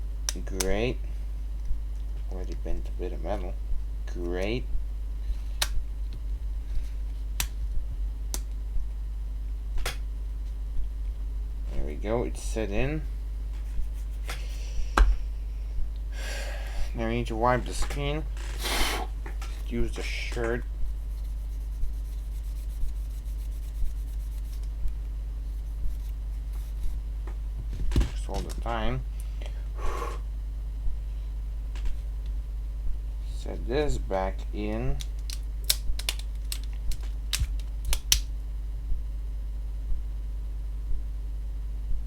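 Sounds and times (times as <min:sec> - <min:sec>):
steady low hum: 0:00.0 - 0:42.0
fabric rubbing on phone screen: 0:13.6 - 0:14.6, 0:20.9 - 0:24.8, 0:25.4 - 0:27.1
sharp plastic clicks: 0:35.0 - 0:38.3.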